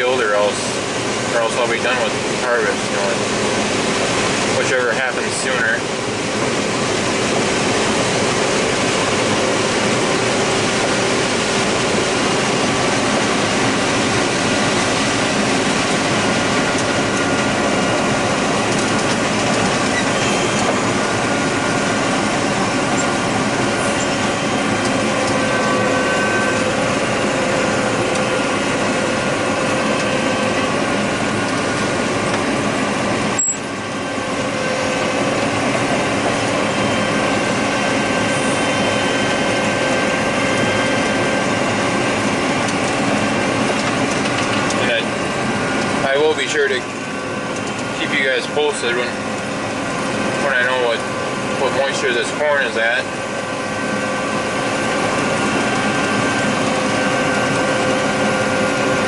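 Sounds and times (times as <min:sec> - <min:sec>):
combine harvester running: 0:00.0 - 0:59.0.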